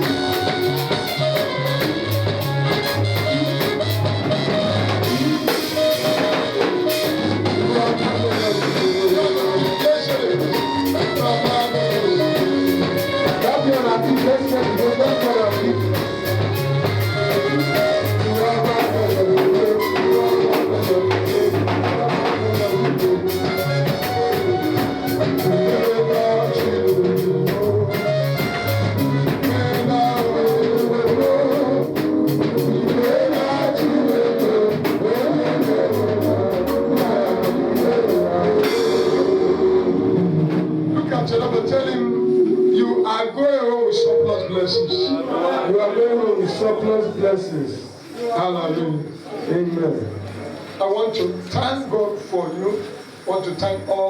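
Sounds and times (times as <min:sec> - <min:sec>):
guitar melody: 0:00.0 - 0:18.5
drum beat: 0:00.0 - 0:42.1.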